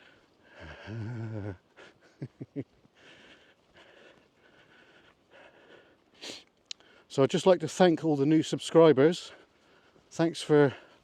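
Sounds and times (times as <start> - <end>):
faint rustle of movement: 0.0 - 11.0
man humming: 0.6 - 1.6.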